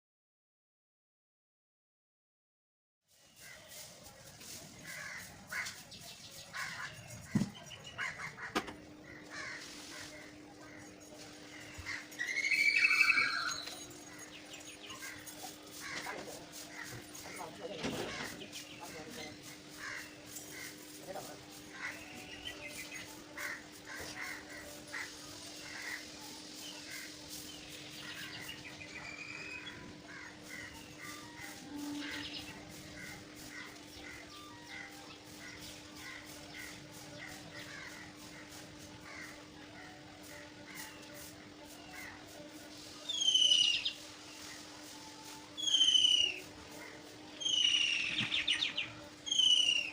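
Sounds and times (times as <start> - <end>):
crows cawing: 4.8 - 5.8, 8.0 - 10.8, 15.0 - 17.4, 18.0 - 20.9, 21.7 - 22.2, 23.3 - 26.2, 30.0 - 39.4.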